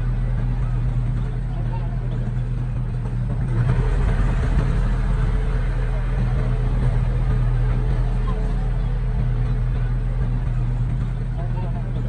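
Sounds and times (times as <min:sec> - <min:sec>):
heavy machinery diesel engine: 0:00.0 - 0:12.0.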